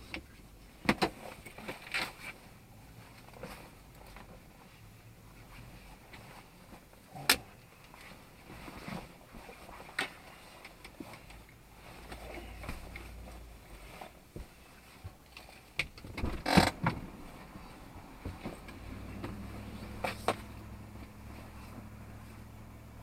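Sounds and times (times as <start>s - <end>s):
car cabin rumble: 15.7s - 23.0s.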